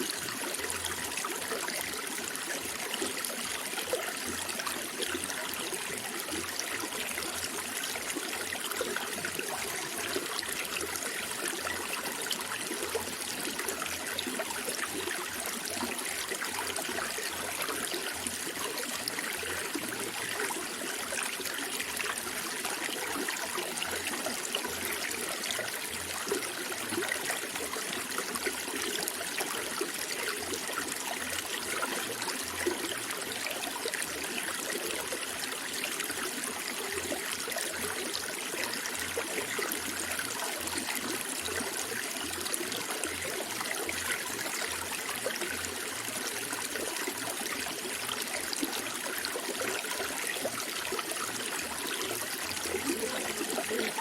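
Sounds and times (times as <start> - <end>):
running water splashing: 52.4 - 54.0.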